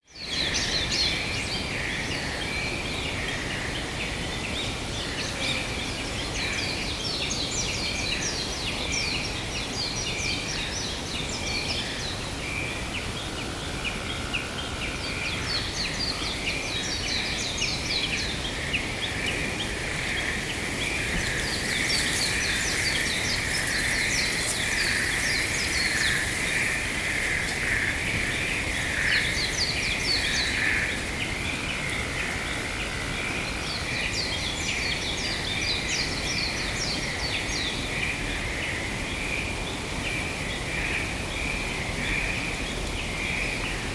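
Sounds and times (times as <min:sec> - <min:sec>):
wind noise: 0:17.8 - 0:33.9.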